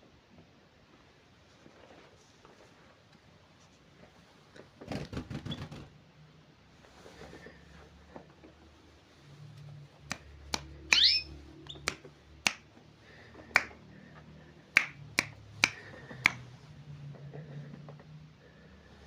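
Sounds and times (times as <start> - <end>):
canary chip calls: 10.8 - 12.0
canary twittering: 10.8 - 12.0.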